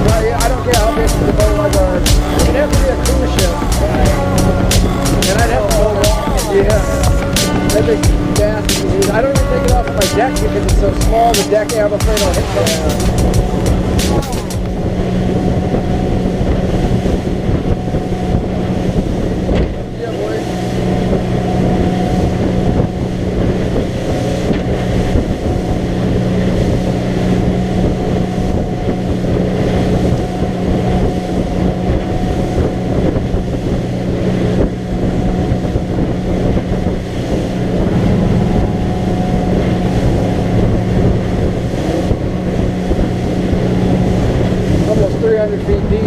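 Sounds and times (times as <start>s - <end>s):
motorboat engine running: 0.0s - 46.0s
wind on microphone: 0.0s - 46.0s.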